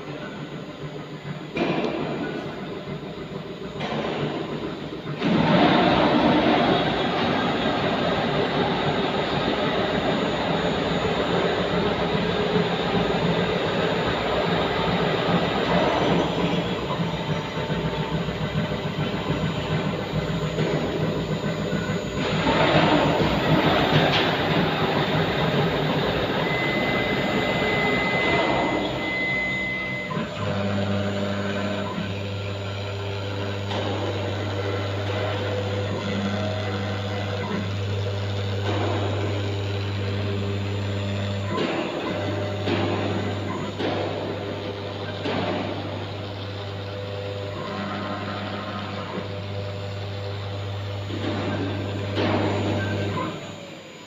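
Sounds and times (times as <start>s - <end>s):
router machining noise: 5.2s - 54.0s
steady high whine: 5.8s - 47.7s.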